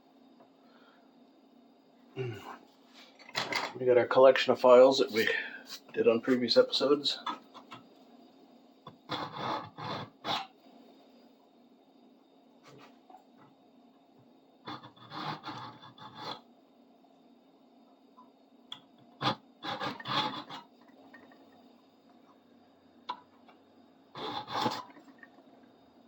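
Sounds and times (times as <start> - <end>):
file rasping on steel: 9.0 - 10.5, 14.6 - 16.4, 19.2 - 20.8, 24.2 - 25.0.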